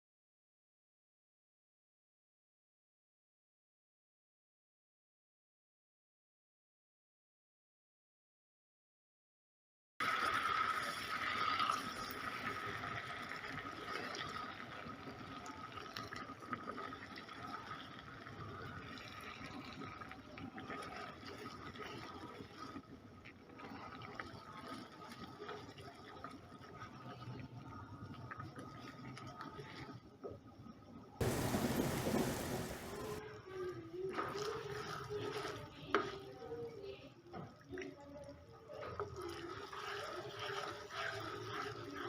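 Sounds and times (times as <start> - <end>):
caramel bubbling in a saucepan: 10.0 - 33.2, 34.3 - 42.0
faint steady whine: 31.2 - 33.2.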